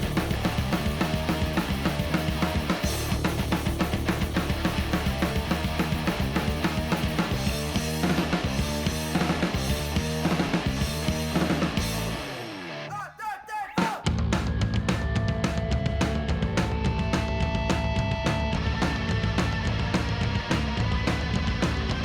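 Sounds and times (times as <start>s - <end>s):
drum kit fast beat: 0.0s - 12.2s, 13.8s - 22.0s
bass line: 0.0s - 12.8s, 14.1s - 22.0s.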